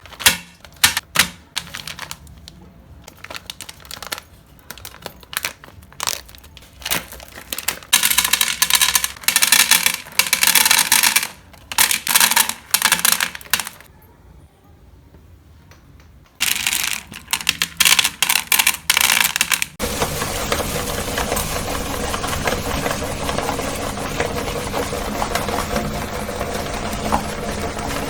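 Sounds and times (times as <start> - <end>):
candies crunching in grinder: 0.0 - 13.9, 16.4 - 28.0
hard candy clicks and clatters: 0.0 - 13.9, 16.4 - 20.6.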